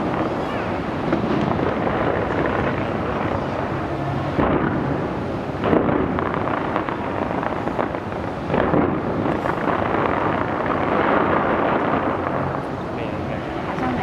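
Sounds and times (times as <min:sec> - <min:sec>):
fireworks booming and crackling: 0:00.0 - 0:14.0.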